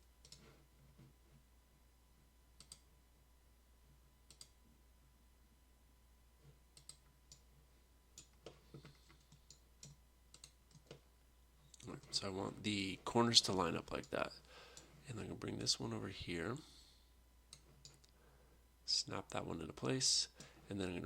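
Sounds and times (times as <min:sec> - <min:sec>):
computer mouse clicks: 0:00.2 - 0:00.5, 0:02.6 - 0:02.9, 0:04.3 - 0:04.6, 0:06.7 - 0:07.5, 0:08.1 - 0:11.0, 0:17.5 - 0:18.2.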